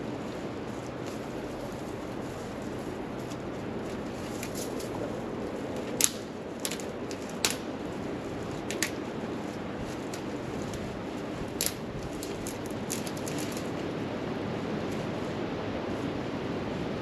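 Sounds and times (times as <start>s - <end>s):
campfire hissing: 0.0s - 16.2s
wood popping in fire: 3.0s - 13.8s.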